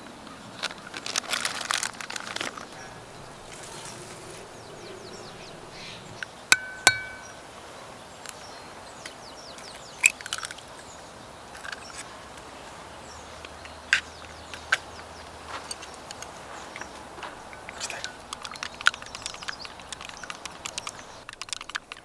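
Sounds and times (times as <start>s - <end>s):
outdoor background noise: 0.0s - 22.0s
hard objects clinking: 0.6s - 5.8s, 6.6s - 7.4s
faint bird chirps: 2.3s - 7.4s.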